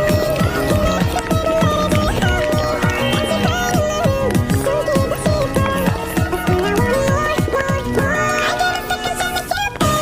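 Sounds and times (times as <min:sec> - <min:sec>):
pitch-bending melody: 0:01.6 - 0:05.2.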